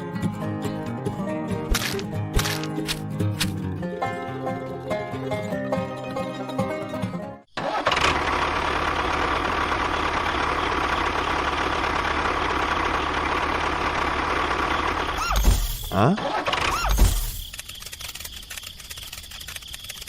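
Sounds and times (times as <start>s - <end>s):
background music: 0.0s - 7.5s.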